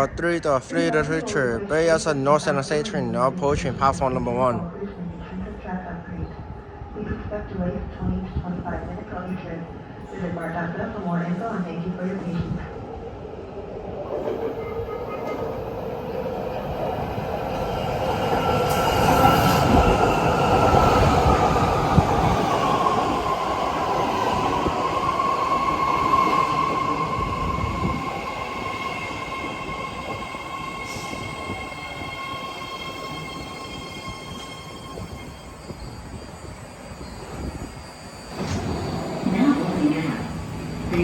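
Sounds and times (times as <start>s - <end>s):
train wheels rumbling on rail: 14.0s - 41.0s.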